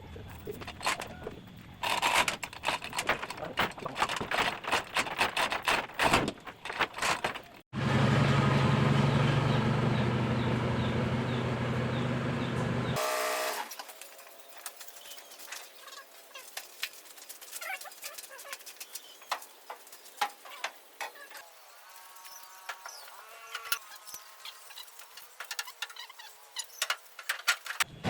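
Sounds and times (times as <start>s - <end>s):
rapid clattering knocks: 0.4s - 7.6s
motor engine running: 7.7s - 13.2s.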